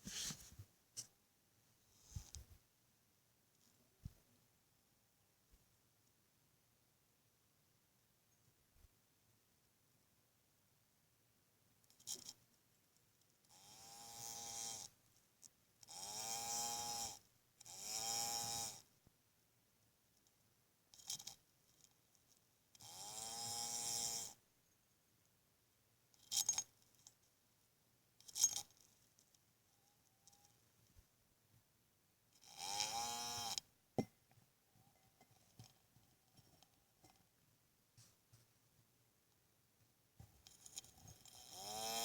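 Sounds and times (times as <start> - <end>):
beetle buzzing: 32.4 - 33.6.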